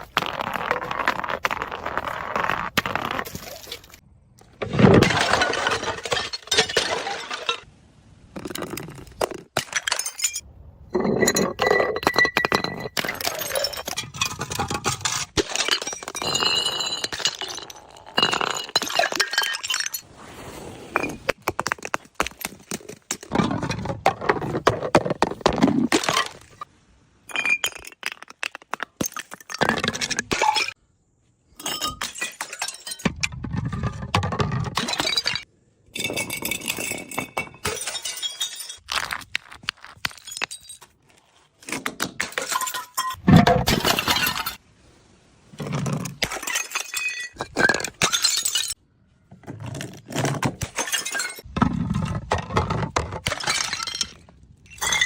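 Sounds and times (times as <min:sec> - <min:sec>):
glass bottles smashing: 0:04.8 - 0:07.7, 0:09.6 - 0:10.4, 0:11.0 - 0:20.0, 0:31.6 - 0:33.3, 0:34.3 - 0:35.4, 0:36.0 - 0:39.2, 0:42.0 - 0:44.6, 0:46.2 - 0:48.8, 0:50.3 - 0:51.5, 0:53.2 - 0:55.0.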